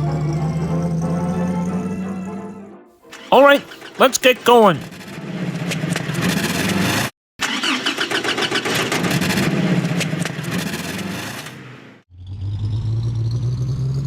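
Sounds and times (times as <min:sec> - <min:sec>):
vehicle engine starting and running: 0:05.0 - 0:11.5.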